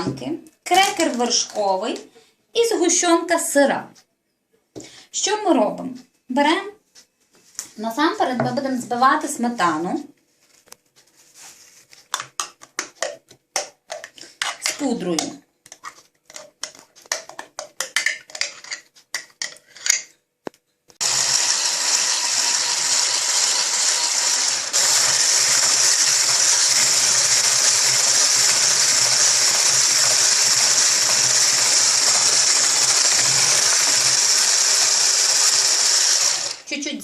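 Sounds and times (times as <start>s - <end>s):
electric mixer running: 21.0s - 36.7s.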